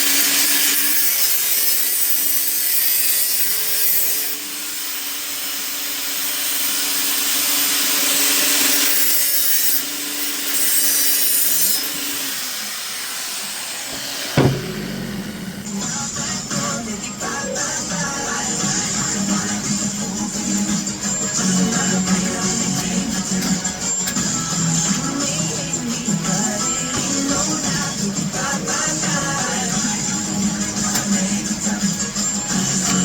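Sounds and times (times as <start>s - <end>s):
power tool grinding metal: 0.0s - 33.0s
thump: 13.9s - 16.8s.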